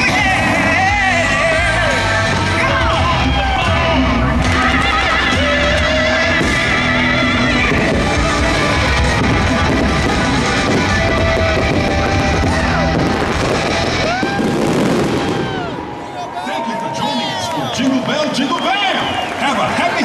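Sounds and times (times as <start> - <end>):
rock music with singing and guitar: 0.0 - 14.4
fireworks bursts: 0.0 - 16.2
crowd cheering: 0.0 - 20.0
whistling: 18.4 - 19.3.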